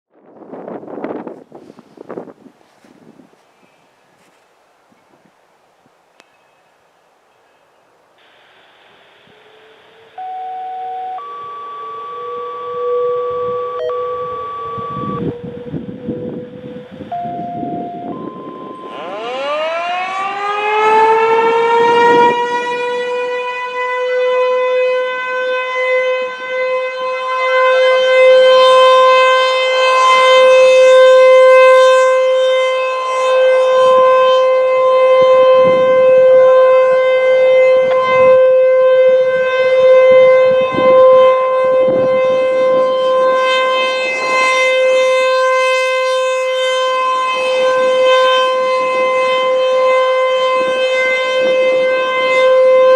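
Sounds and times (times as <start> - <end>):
outdoor warning siren: 0.1 - 2.8, 8.2 - 52.9.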